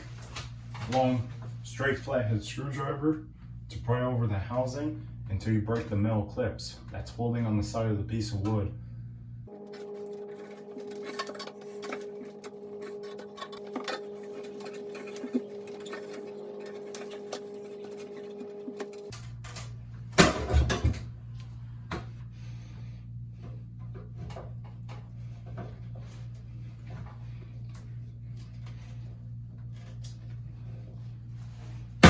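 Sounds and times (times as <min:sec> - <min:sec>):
steady low hum: 0:00.0 - 0:32.0
screwdriver scraping metal: 0:10.3 - 0:18.4.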